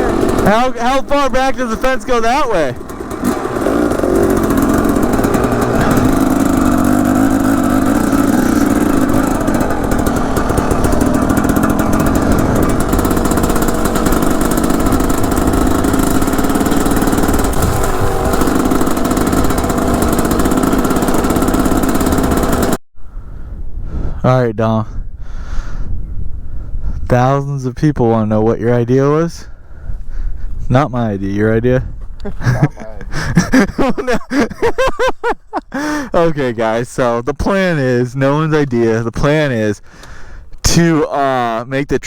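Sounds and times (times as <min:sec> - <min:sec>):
dirt bike engine running: 0:00.0 - 0:22.8.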